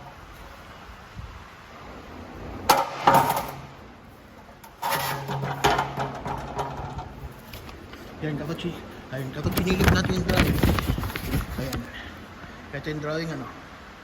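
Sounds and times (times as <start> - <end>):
scraping: 4.6 - 8.0
handling knocks: 5.2 - 7.8.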